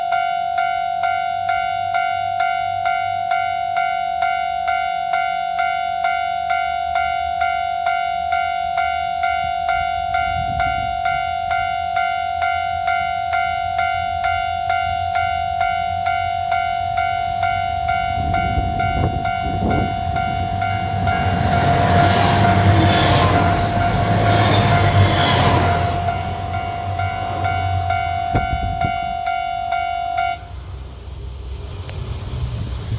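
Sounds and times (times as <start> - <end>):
train rumbling past: 9.2 - 32.9.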